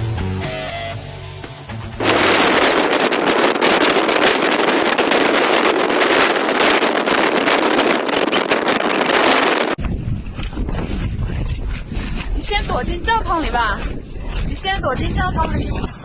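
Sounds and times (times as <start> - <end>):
driving rain: 2.0 - 9.8
gusting wind: 2.0 - 16.0.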